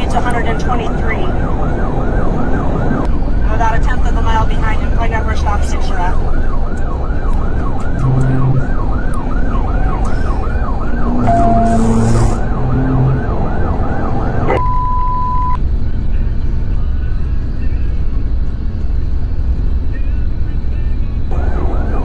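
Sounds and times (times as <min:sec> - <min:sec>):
police siren yelping: 0:00.0 - 0:15.6, 0:21.3 - 0:22.0
road and engine noise: 0:00.0 - 0:22.0
short steady beep: 0:08.0 - 0:08.8, 0:11.1 - 0:13.4, 0:14.4 - 0:15.6.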